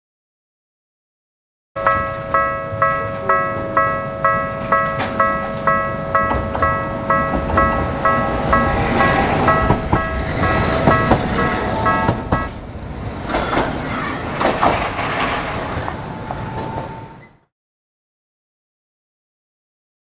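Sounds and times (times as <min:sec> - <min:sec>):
level crossing bell clanging: 0:01.8 - 0:12.7
train wheels clicking over rail joints: 0:01.8 - 0:17.4.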